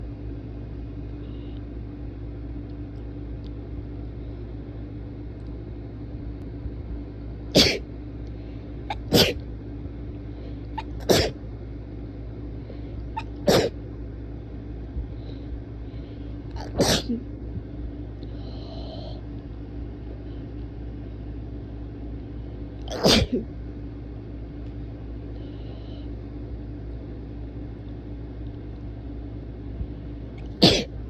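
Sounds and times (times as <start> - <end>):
person sneezing: 7.6 - 7.8, 8.9 - 9.4, 10.8 - 11.4, 13.2 - 13.8, 16.6 - 17.2, 22.9 - 23.5, 30.5 - 31.0.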